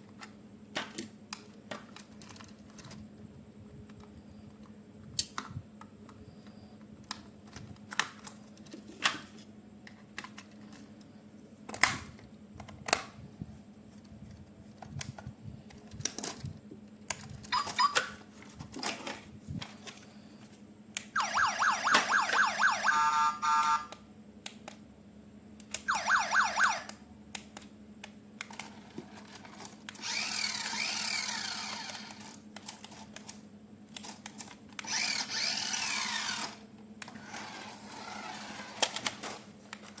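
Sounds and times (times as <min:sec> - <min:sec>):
toy siren warbling: 0:17.5 - 0:18.2, 0:21.2 - 0:24.0, 0:25.9 - 0:26.9.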